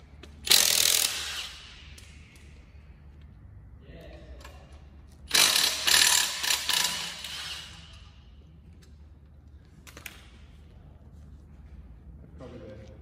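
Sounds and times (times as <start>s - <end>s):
tool clicking and rattling: 5.3s - 8.1s.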